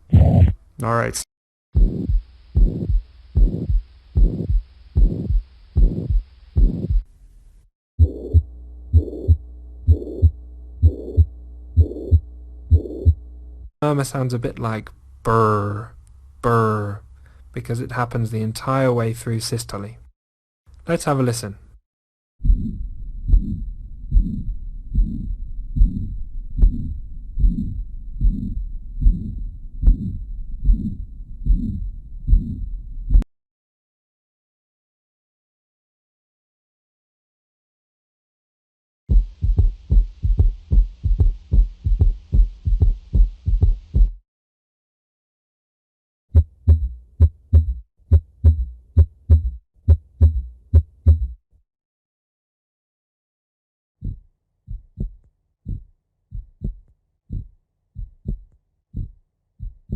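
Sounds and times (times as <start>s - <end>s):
blowing heart murmur: 0.0s - 0.6s, 1.8s - 7.0s, 8.0s - 13.2s, 22.4s - 33.2s, 39.1s - 44.2s, 46.4s - 51.4s
heartbeat through stethoscope: 1.8s - 7.1s, 8.0s - 13.2s, 22.4s - 33.3s, 39.1s - 44.2s, 46.3s - 51.4s, 54.0s - 59.9s.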